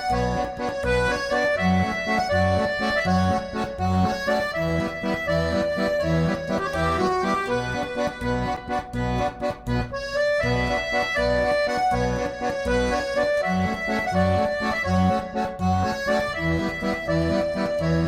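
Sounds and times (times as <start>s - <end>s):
accordion chords: 0.0s - 18.0s
pulsing bass line: 0.0s - 18.0s.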